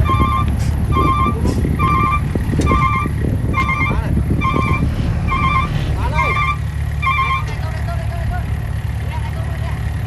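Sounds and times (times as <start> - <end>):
reversing alarm beeping: 0.0 - 7.6
diesel engine rumbling: 0.0 - 10.0.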